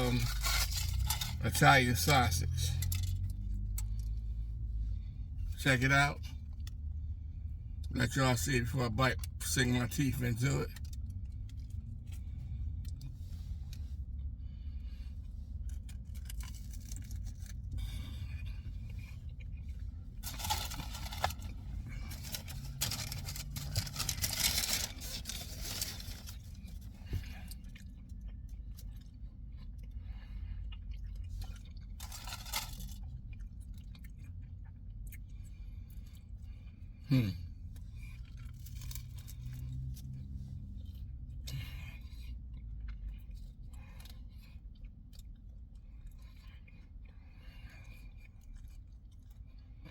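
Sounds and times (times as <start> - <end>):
steady low hum: 0.0 - 49.9
person chewing food: 0.1 - 1.4, 10.8 - 49.9
rustling: 20.2 - 26.6.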